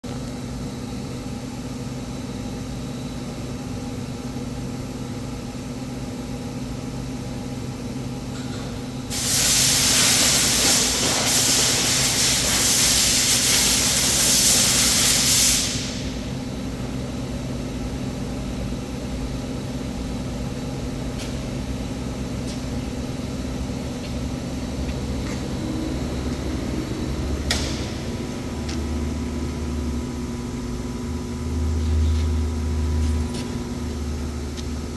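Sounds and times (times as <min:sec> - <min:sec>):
loud hiss: 0:09.1 - 0:16.3
laser welder humming: 0:09.1 - 0:16.5, 0:24.7 - 0:30.1.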